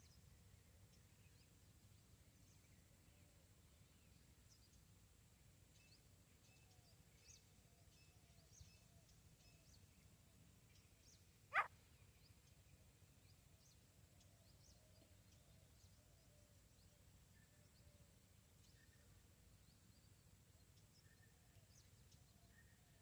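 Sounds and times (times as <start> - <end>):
distant birds chirping: 5.8 - 14.3.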